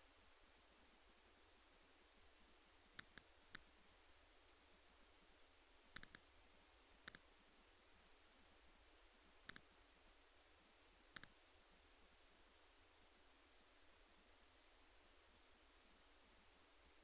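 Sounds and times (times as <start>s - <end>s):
faint hiss: 0.0s - 17.0s
sharp quick clicks: 3.0s - 3.7s, 5.9s - 6.3s, 7.0s - 7.3s, 9.4s - 9.7s, 11.1s - 11.4s.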